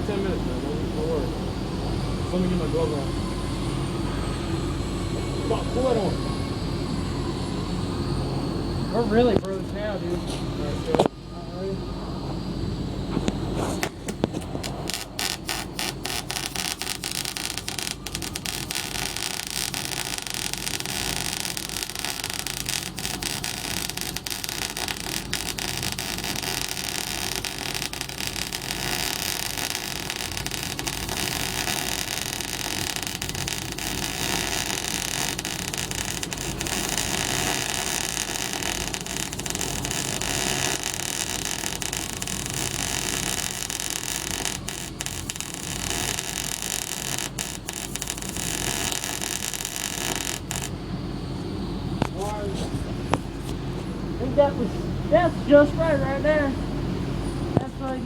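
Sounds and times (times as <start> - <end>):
welding arc crackling and hissing: 13.2 - 50.9.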